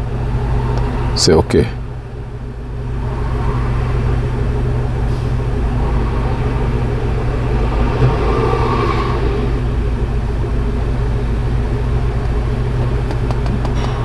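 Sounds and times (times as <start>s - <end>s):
vehicle low hum: 0.0s - 14.0s.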